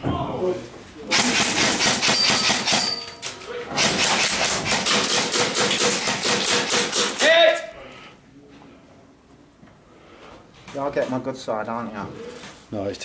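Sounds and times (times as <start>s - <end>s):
airsoft guns firing full auto: 1.1s - 3.1s, 3.8s - 7.3s.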